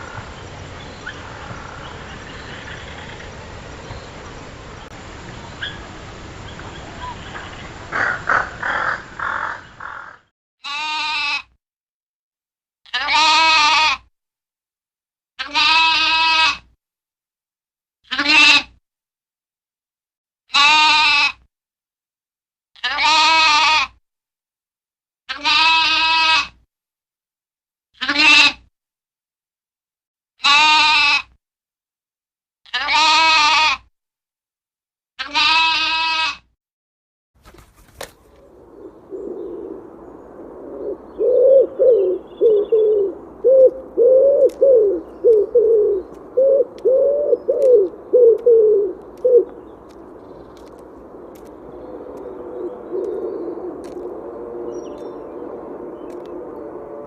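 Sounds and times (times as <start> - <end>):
goat or sheep bleating: 10.6 - 11.6, 12.9 - 14.1, 15.4 - 16.7, 18.1 - 18.8, 20.5 - 21.4, 22.8 - 24.0, 25.3 - 26.6, 28.0 - 28.7, 30.4 - 31.4, 32.7 - 33.9, 35.2 - 36.5.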